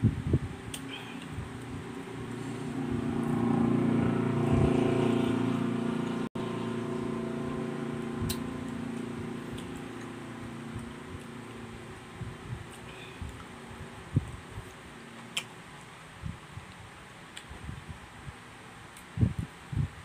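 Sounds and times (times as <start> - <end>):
vehicle engine passing by: 1.4 - 12.3.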